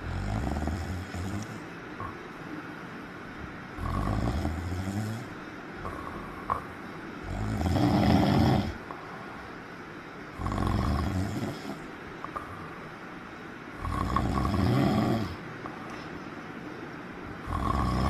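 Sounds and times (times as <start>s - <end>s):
person snoring: 0.0s - 1.6s, 3.8s - 6.6s, 7.2s - 8.8s, 10.4s - 12.6s, 13.8s - 15.4s, 17.4s - 18.0s
quiet breathing: 0.0s - 18.0s.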